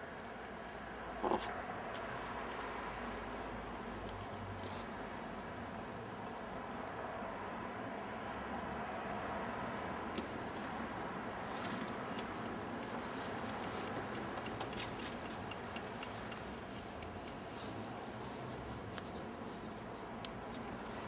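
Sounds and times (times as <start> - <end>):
faint ticks and clicks: 11.8 - 17.4.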